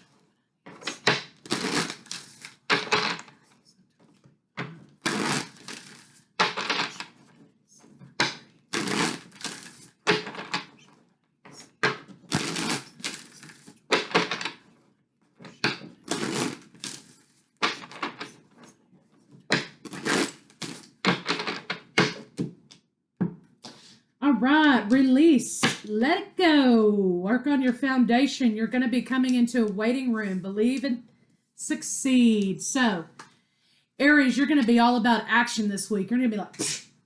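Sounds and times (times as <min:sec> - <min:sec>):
cards being shuffled: 0:00.7 - 0:14.7, 0:15.4 - 0:22.6.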